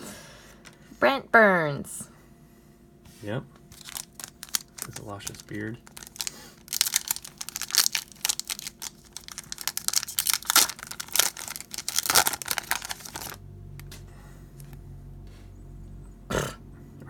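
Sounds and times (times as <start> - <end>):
wrapper crinkling and tearing: 3.7 - 13.9.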